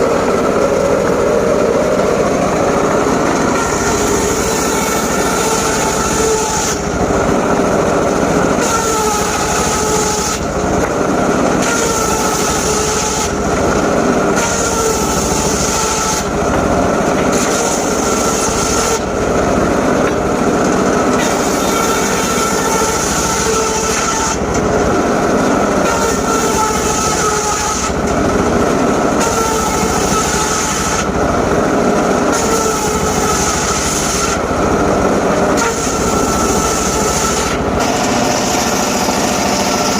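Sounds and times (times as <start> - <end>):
saw cutting hiss: 0.0 - 7.0, 8.5 - 10.5, 11.5 - 13.4, 14.3 - 16.3, 17.2 - 19.1, 21.1 - 24.5, 25.8 - 28.0, 29.1 - 31.1, 35.5 - 39.9
sawmill machine whine: 0.0 - 39.9.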